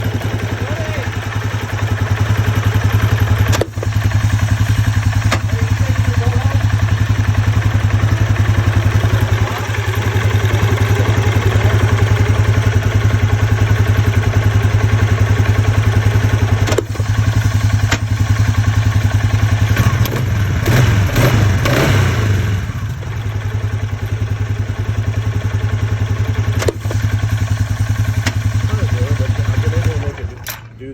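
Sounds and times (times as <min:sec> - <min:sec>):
atv engine idling: 0:00.0 - 0:30.9
gear selector clunk: 0:03.4 - 0:05.7, 0:16.5 - 0:18.2, 0:19.8 - 0:20.8, 0:26.4 - 0:27.4, 0:28.0 - 0:28.7, 0:29.8 - 0:30.8.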